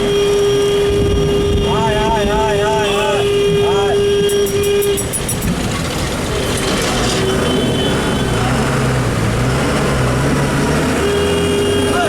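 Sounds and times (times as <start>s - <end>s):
heavy rain and road noise: 0.0s - 12.0s
bus engine drone: 4.2s - 12.0s.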